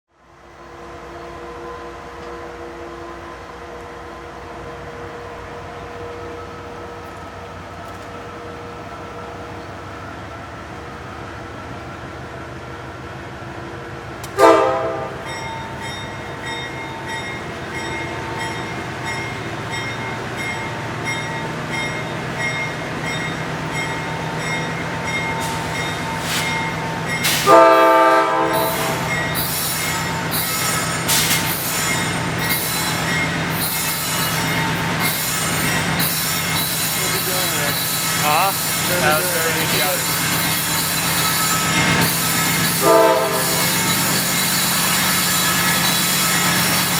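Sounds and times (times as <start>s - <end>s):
train air horn: 14.3s - 15.3s, 27.3s - 29.1s, 42.8s - 43.8s
locomotive engines throttling up: 28.5s - 42.8s.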